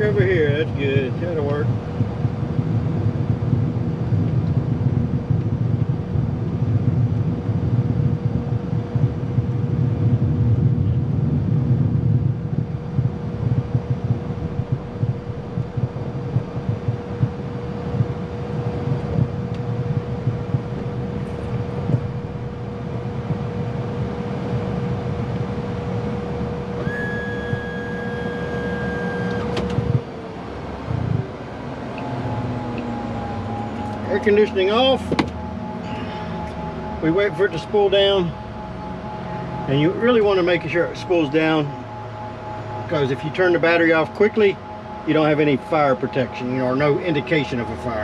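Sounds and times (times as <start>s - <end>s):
constant hum: 0.0s - 48.0s
jet engines rumbling: 0.0s - 48.0s
high steady tone: 12.6s - 30.2s, 32.0s - 48.0s.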